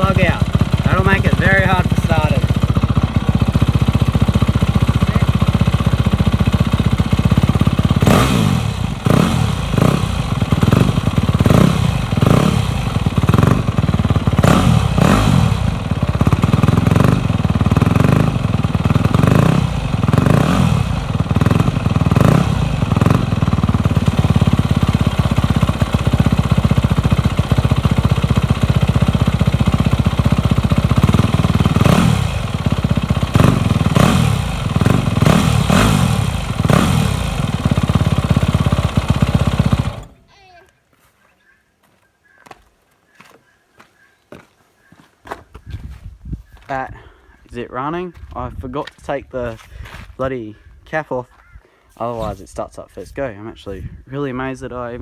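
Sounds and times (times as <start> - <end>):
dirt bike engine revving: 0.0 - 40.2.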